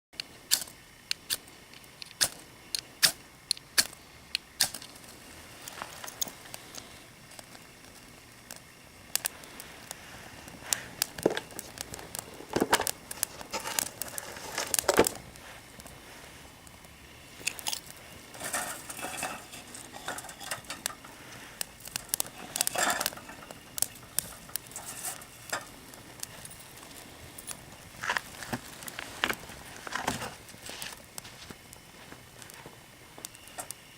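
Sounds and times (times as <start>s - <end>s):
crackling and crinkling: 0.2s - 33.9s
fire steel striking flint: 0.5s - 3.2s, 3.8s - 4.0s, 4.6s - 5.0s, 17.4s - 31.0s.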